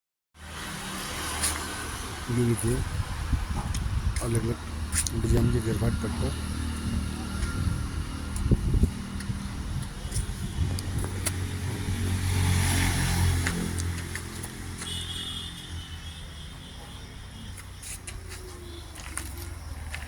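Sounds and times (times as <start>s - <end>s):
vehicle engine rumbling past: 0.4s - 15.7s.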